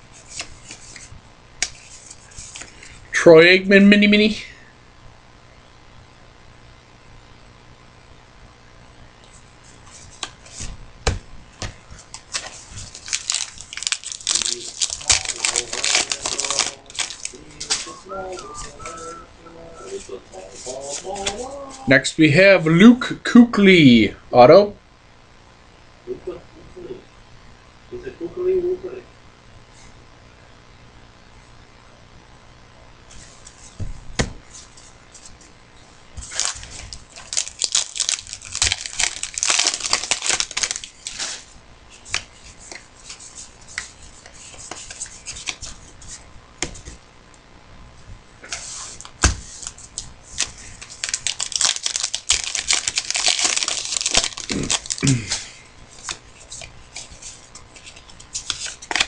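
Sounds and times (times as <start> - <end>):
cards and packaging handled: 12.0 - 19.2, 36.2 - 47.0, 48.4 - 59.0
wrappers torn and crinkled: 12.2 - 17.8, 36.2 - 42.8, 49.0 - 59.0.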